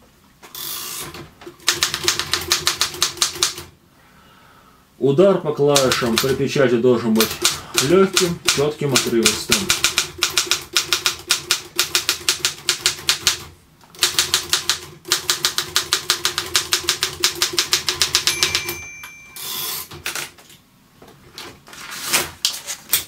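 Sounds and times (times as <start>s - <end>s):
typewriter typing fast: 1.6s - 3.7s, 5.7s - 6.4s, 7.2s - 18.8s
typewriter margin bell ringing: 18.0s - 19.9s
typewriter carriage sliding: 21.4s - 23.0s.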